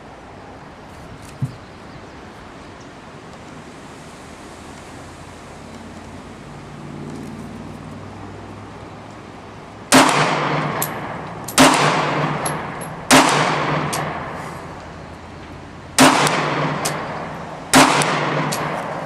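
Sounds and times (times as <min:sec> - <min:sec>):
pistol shots echoing: 0:09.9 - 0:14.4, 0:16.0 - 0:19.0.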